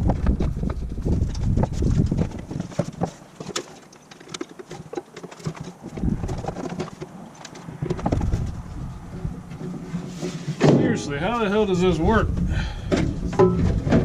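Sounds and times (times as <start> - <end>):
dull thumps: 7.7 - 11.0.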